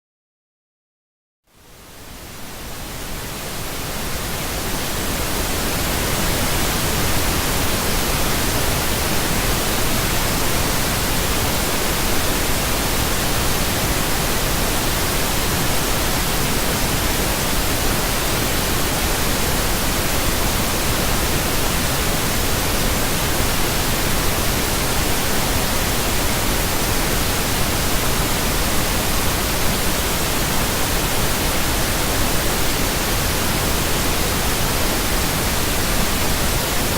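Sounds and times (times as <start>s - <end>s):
pink noise hiss: 1.5s - 36.9s.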